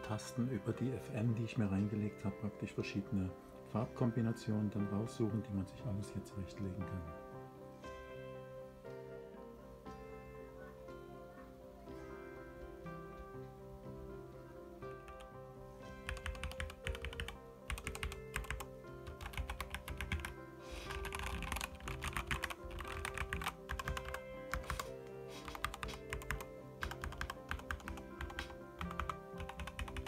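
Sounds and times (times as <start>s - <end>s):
background music: 0.0s - 30.0s
keyboard typing: 15.0s - 15.3s, 16.0s - 30.0s.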